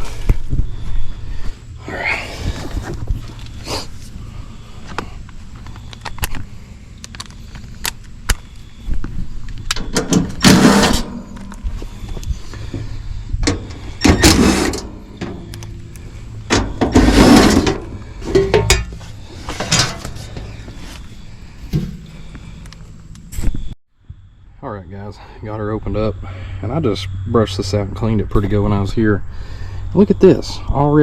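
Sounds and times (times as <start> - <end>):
low steady hum: 0.0 - 31.0
handling noise: 4.8 - 23.7.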